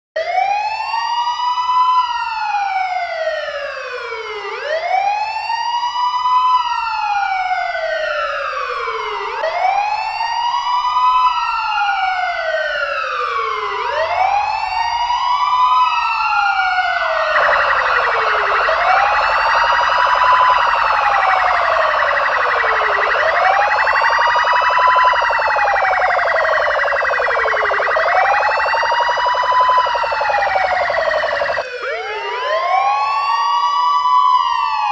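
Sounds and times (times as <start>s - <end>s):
ambulance siren wailing: 0.2s - 34.9s
rapidly pulsing buzzy tone: 17.4s - 31.7s.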